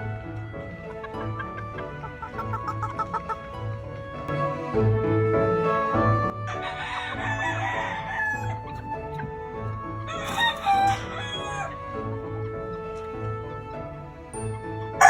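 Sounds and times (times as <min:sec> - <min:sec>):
background music with steady beat: 0:00.0 - 0:15.0
rooster crowing: 0:06.5 - 0:09.1, 0:09.8 - 0:12.1.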